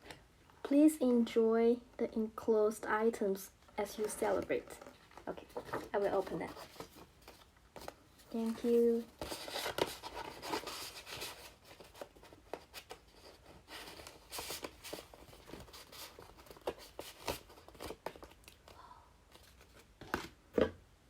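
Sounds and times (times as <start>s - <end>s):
paper packaging rustling: 3.8s - 18.7s, 19.3s - 20.4s.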